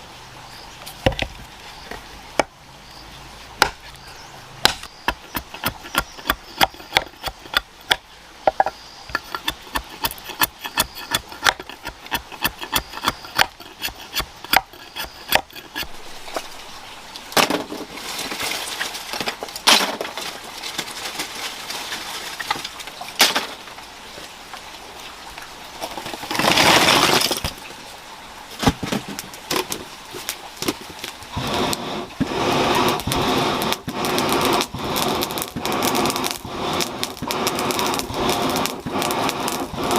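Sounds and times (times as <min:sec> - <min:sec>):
chopping strikes on wood: 0:03.6 - 0:03.8, 0:04.6 - 0:08.7
scraping and rasping: 0:05.1 - 0:08.0, 0:08.6 - 0:16.6.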